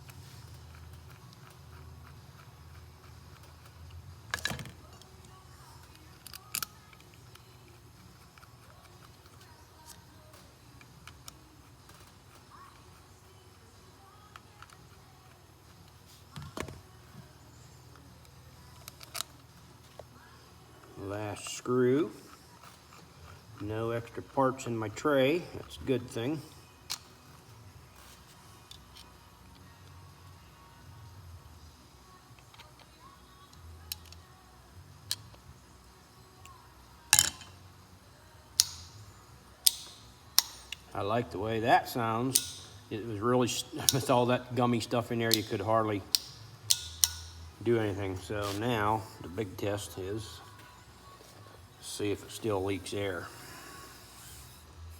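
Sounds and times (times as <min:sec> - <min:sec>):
tool clicking and scraping on metal: 0:39.6 - 0:40.9, 0:42.2 - 0:42.9, 0:43.8 - 0:50.8.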